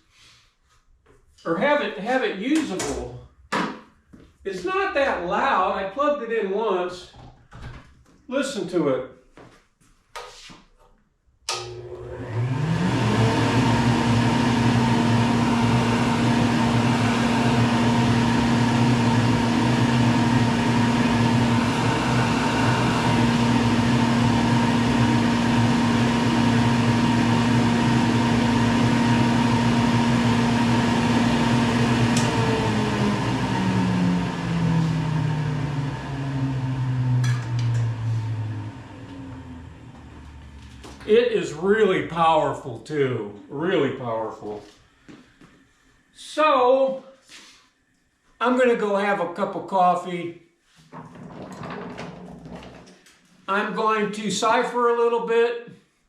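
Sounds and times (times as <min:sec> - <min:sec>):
dust collector fan hum: 0:11.5 - 0:42.4.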